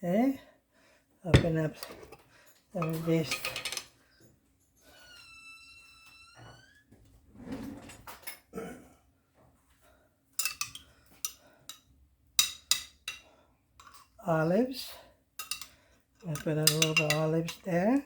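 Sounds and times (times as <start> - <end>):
glass and utensils clinking: 1.4 - 2.2, 16.3 - 17.6.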